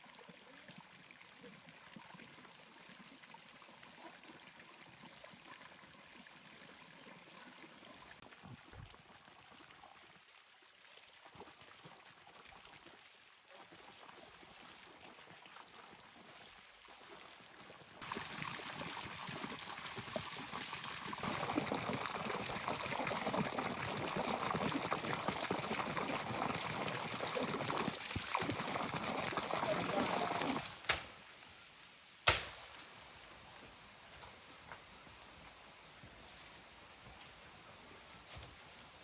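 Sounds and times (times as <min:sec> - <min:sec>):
water flowing over rocks: 0:00.0 - 0:31.1.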